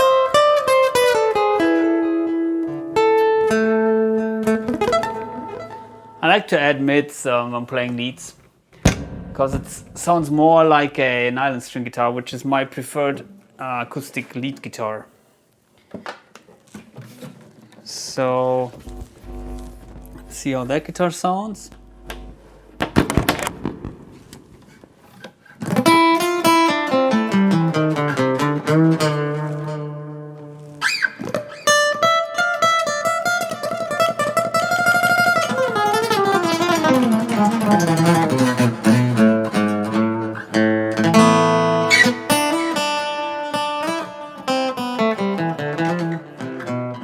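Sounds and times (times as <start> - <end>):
acoustic-electric guitar playing: 0.0 - 6.3, 18.8 - 24.8, 33.6 - 47.0
electric guitar lead line: 4.3 - 6.2, 18.8 - 24.7.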